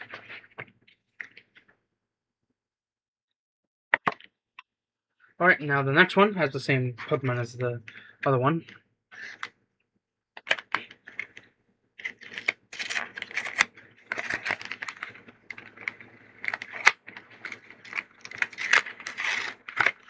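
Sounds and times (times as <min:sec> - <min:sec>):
foil wrapper tearing and crinkling: 0:12.0 - 0:20.0.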